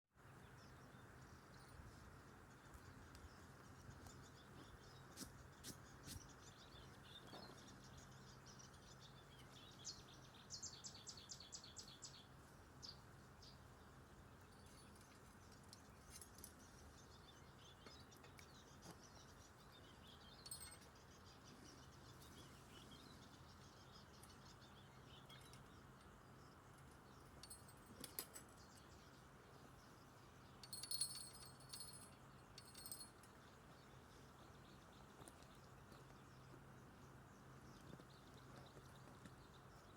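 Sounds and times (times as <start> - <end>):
faint birdsong: 0.1 - 39.9
fishing rod bell jingling: 30.6 - 33.3.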